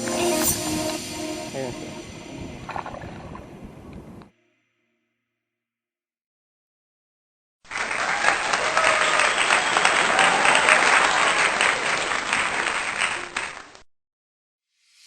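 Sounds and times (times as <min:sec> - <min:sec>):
crowd applauding: 0:07.7 - 0:13.8.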